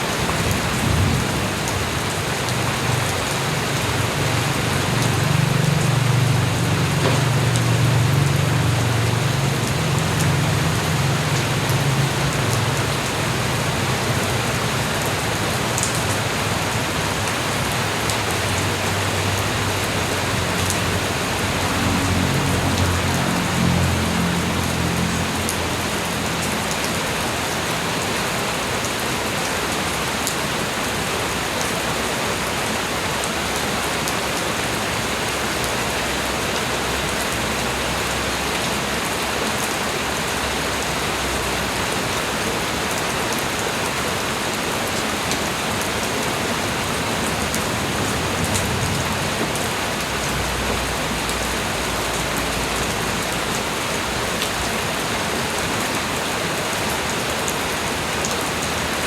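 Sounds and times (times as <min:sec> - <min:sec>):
light rain falling: 0:00.0 - 0:59.0.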